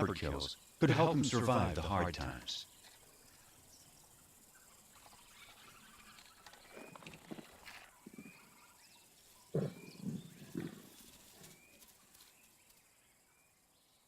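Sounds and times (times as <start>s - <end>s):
bird chirping: 0.0s - 14.0s
lion growling: 9.5s - 11.0s.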